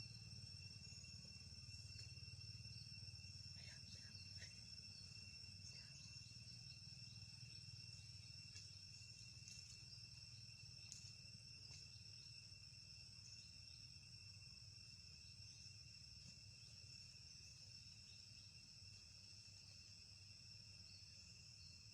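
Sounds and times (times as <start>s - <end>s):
high-pitched insect chorus: 0.0s - 21.9s
faint ticks: 8.0s - 12.2s.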